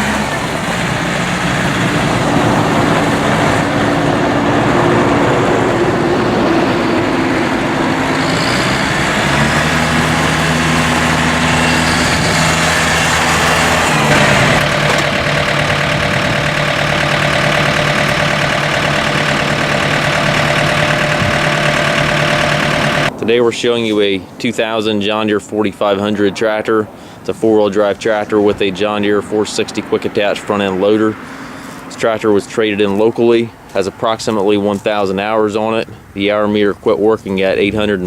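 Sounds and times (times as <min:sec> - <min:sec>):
tractor diesel engine running: 0:00.0 - 0:23.2.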